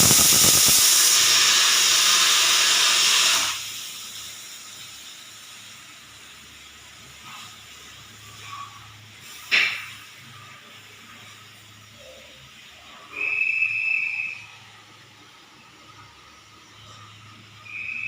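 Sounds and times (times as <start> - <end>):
pressure cooker whistle: 0.0 - 3.7, 13.1 - 14.7, 17.6 - 18.0
valve rattling: 0.0 - 3.8
faint steam hiss: 0.0 - 18.0.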